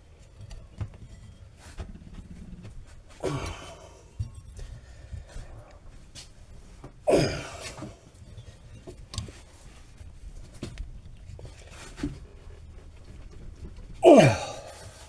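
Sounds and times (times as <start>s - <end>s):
small metal clicks and creaks: 0.0s - 3.2s, 8.1s - 14.0s.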